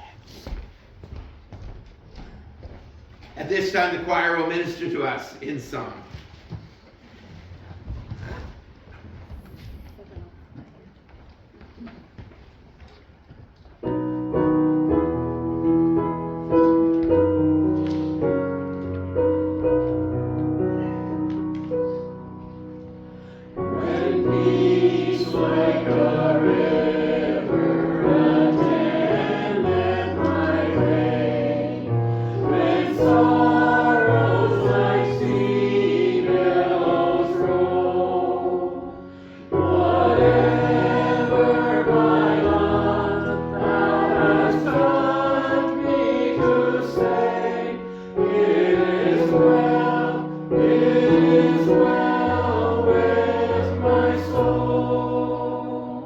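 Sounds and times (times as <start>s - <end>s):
piano accompaniment: 13.8s - 56.0s
church choir singing: 14.0s - 56.0s.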